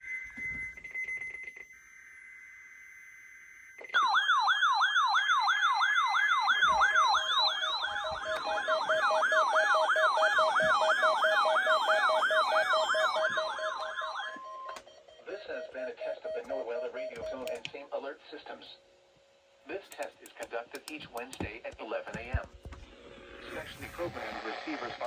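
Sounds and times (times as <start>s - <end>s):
electronic alert siren sweeping: 1.9s - 15.3s, 23.0s - 24.9s.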